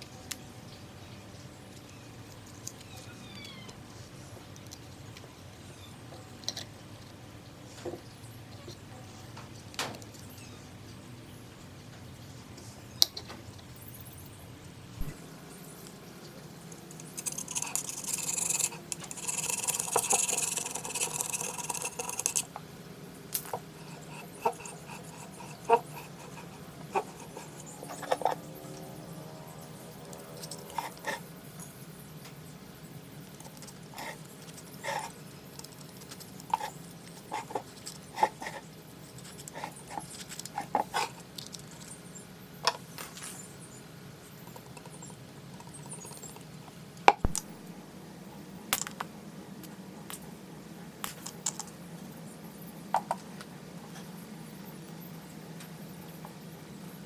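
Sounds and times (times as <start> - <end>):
tools and parts clicking: 16.7 - 22.6, 47.1 - 47.5, 51.0 - 51.8.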